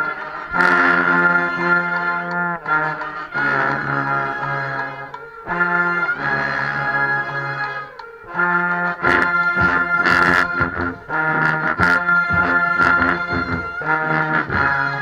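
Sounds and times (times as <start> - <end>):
brass section holding chords: 0.0 - 15.0
drum hits: 9.0 - 15.0.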